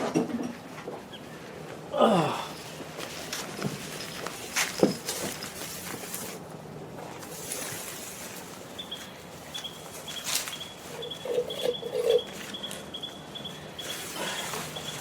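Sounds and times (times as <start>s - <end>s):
high repeated animal chirps: 8.8s - 15.0s.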